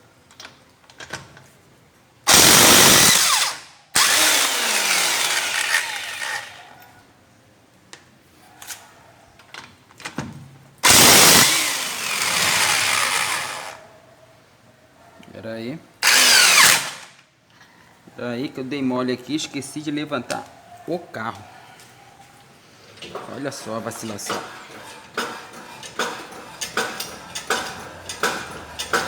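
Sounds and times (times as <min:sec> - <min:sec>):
impact wrench hammering: 0:02.3 - 0:06.6, 0:10.8 - 0:13.8, 0:16.0 - 0:17.1, 0:25.2 - 0:29.0.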